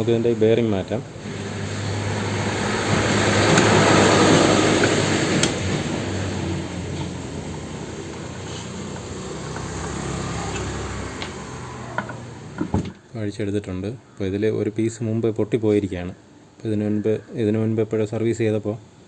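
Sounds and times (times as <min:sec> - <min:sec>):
rushing mechanical noise: 0:01.0 - 0:13.0.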